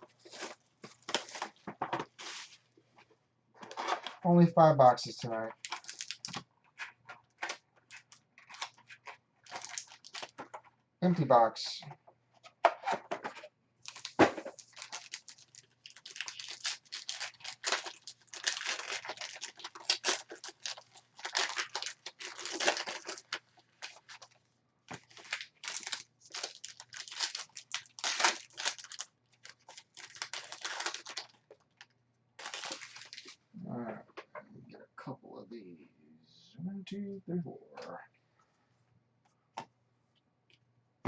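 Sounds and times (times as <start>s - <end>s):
packaging tearing and crumpling: 0.3s - 1.6s, 5.5s - 10.4s, 13.8s - 24.4s, 25.0s - 31.4s, 32.4s - 33.4s
faint low hum: 33.5s - 39.2s.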